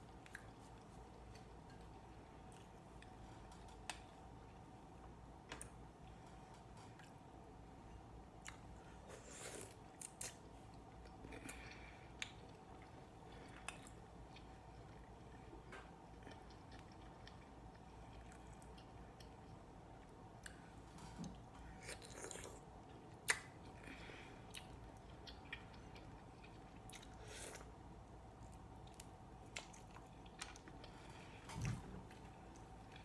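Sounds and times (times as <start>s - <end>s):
close-up chewing: 28.4s - 33.0s.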